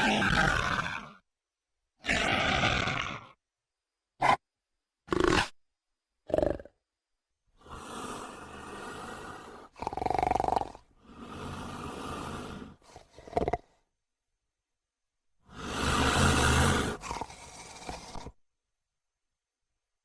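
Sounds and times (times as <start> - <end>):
creature noisy growls: 0.0 - 1.2, 2.0 - 3.4, 5.1 - 5.6, 6.3 - 6.8, 7.6 - 13.8, 15.5 - 18.4.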